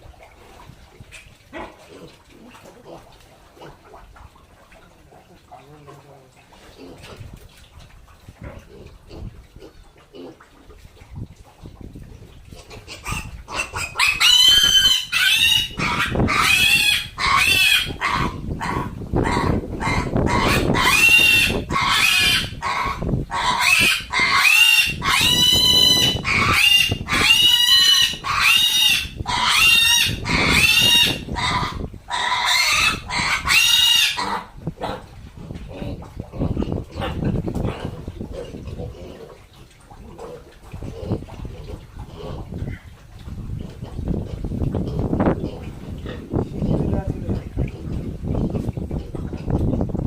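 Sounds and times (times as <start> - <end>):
pig squealing: 12.6 - 35.0.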